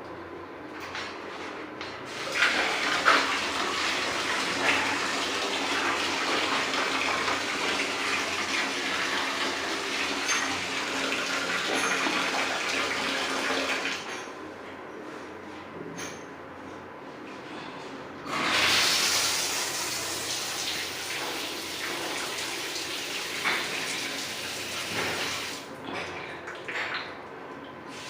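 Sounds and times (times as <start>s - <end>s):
water running hard from a tap: 2.2s - 14.0s, 18.3s - 25.6s.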